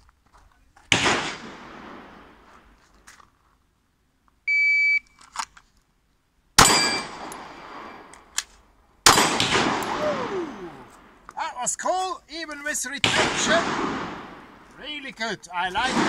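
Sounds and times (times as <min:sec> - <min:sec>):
pistol shots echoing: 0:00.9 - 0:02.3, 0:06.6 - 0:08.1, 0:09.1 - 0:11.0, 0:13.0 - 0:14.7, 0:15.8 - 0:16.0
shot timer beep: 0:04.5 - 0:05.1.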